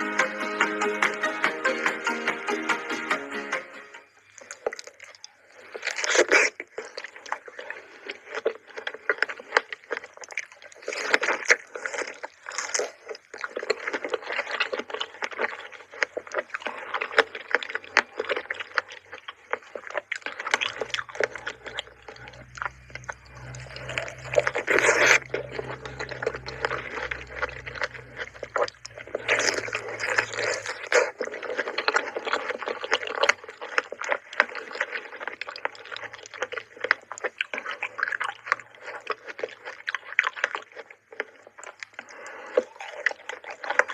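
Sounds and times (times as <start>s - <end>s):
chewing fruit: 4.1s - 43.9s
mouth clicking: 16.4s - 43.9s.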